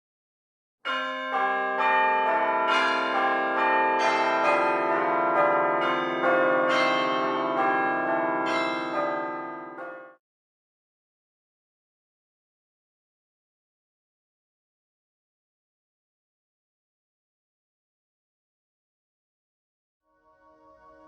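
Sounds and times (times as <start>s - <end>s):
church bells pealing: 0.9s - 10.2s.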